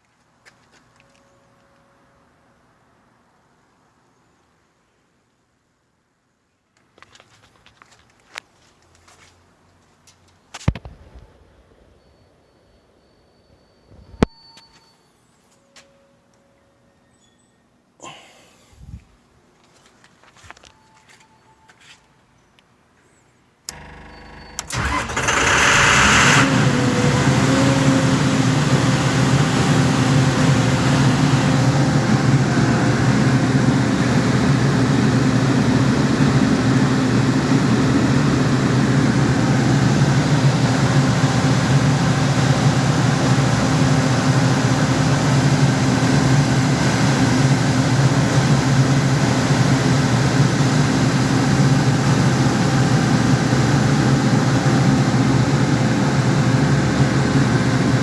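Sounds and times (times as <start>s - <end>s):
diesel engine cranking and running: 23.7s - 58.0s.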